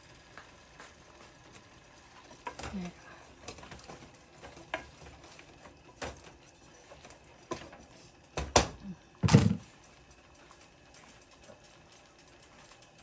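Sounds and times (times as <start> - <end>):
pans and utensils clanking: 2.3 - 9.9.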